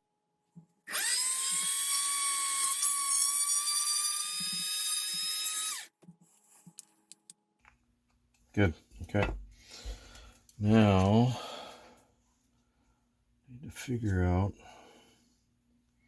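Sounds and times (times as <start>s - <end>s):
electric drill whining: 0.9s - 5.9s.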